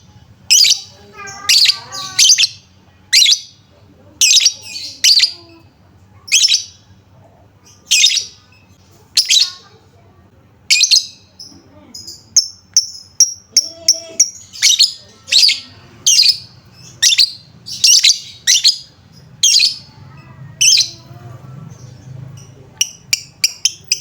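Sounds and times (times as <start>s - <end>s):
bird chirping shrilly: 0.5s - 3.6s, 12.0s - 21.0s.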